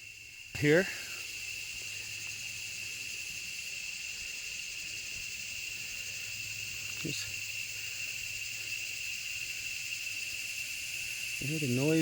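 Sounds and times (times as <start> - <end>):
high even insect tone: 0.0 - 12.0
insect chorus: 0.0 - 12.0.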